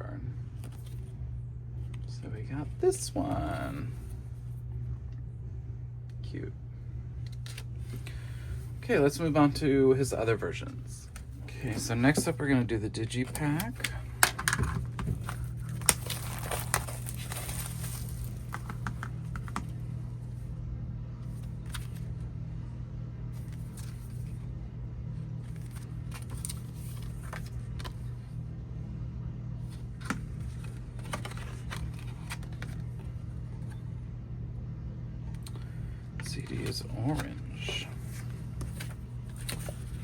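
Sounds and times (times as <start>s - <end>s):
steady low hum: 0.0s - 40.0s
cardboard and plastic clicks and rustles: 13.3s - 19.8s, 25.5s - 28.1s, 29.7s - 33.8s, 36.2s - 40.0s.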